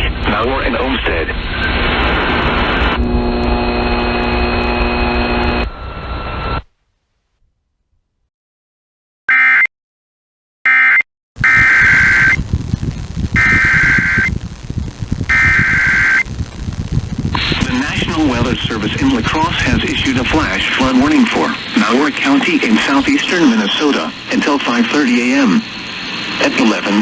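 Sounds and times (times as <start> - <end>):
steady buzzing tone: 2.9 - 5.6, 11.4 - 26.8
raspy warbling data bursts: 11.4 - 16.5, 17.3 - 26.6
receiver hiss: 11.4 - 27.0.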